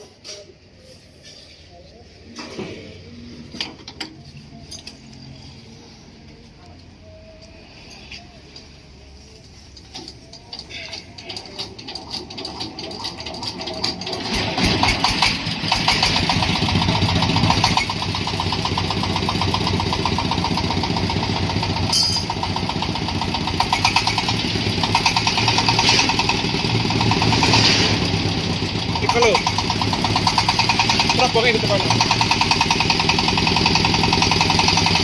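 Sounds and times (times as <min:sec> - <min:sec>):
corn sheller engine running: 0:10.5 - 0:35.0.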